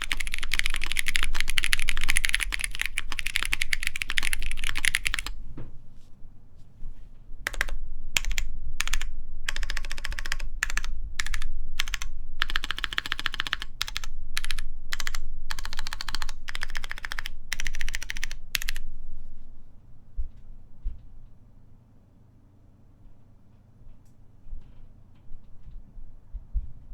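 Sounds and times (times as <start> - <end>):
mechanical keyboard typing: 0.0 - 5.4, 7.5 - 18.8.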